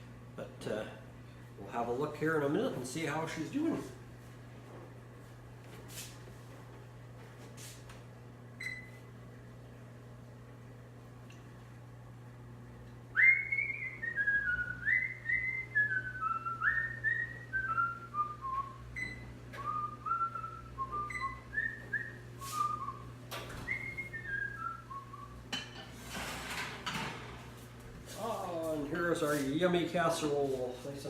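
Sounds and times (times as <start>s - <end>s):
rustling noise: 5.7s - 6.6s
person whistling a tune: 13.2s - 25.3s.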